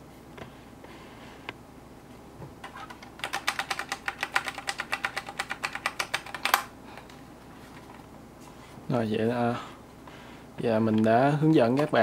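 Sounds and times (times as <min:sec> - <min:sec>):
mechanical keyboard typing: 0:02.6 - 0:06.7.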